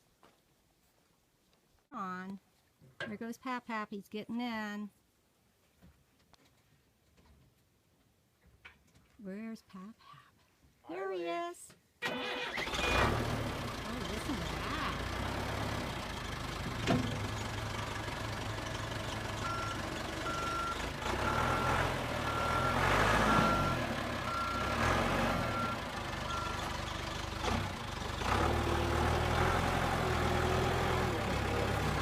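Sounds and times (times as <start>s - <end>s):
backhoe engine running: 12.0s - 32.0s
reversing alarm beeps: 19.4s - 24.8s.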